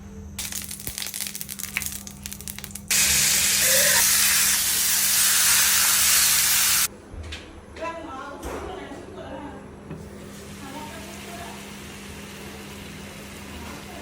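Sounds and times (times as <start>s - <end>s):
chicken frying in hot oil: 0.4s - 6.9s.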